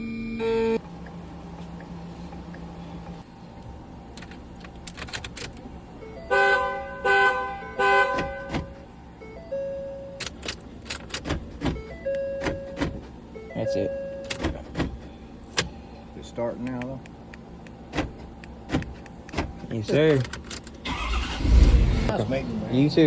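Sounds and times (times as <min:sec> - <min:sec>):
truck horn honks: 0:00.4 - 0:00.8, 0:06.3 - 0:08.8.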